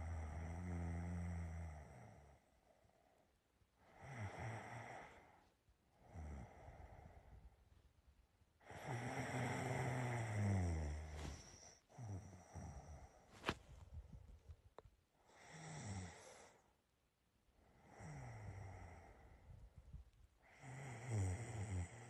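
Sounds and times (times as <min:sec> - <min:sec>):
person snoring: 0:08.6 - 0:13.2, 0:15.3 - 0:16.6, 0:17.8 - 0:19.4, 0:20.4 - 0:22.0.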